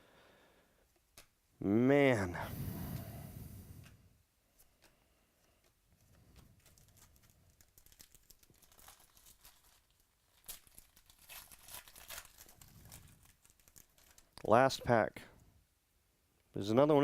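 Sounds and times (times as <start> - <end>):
wrapper crinkling and tearing: 6.2 - 14.5.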